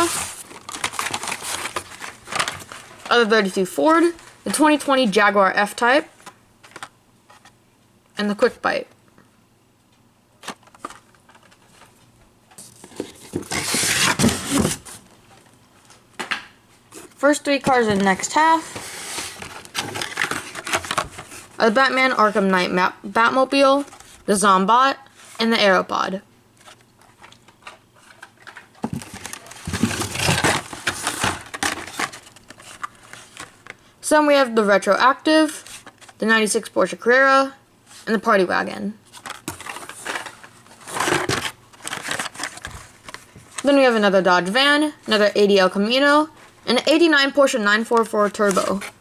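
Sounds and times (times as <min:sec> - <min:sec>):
card and plastic rustling: 0:00.0 - 0:05.0, 0:05.8 - 0:07.6, 0:10.4 - 0:24.4, 0:26.6 - 0:34.0, 0:35.4 - 0:36.2, 0:39.0 - 0:49.0.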